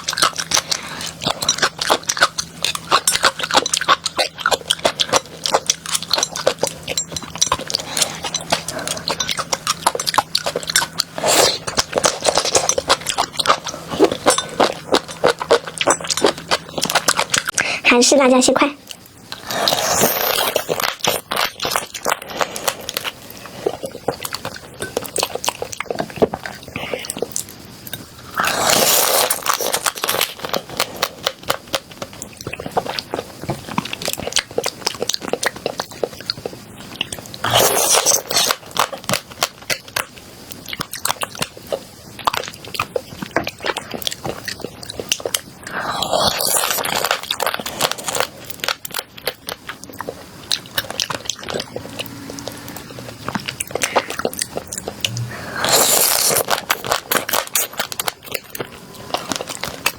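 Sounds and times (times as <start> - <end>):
crackling chewing: 0.0 - 59.9
crunching bites: 53.2 - 59.9.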